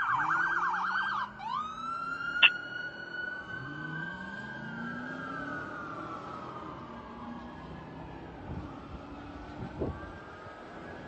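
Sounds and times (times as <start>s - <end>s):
electronic siren yelp and wail: 0.0s - 5.7s.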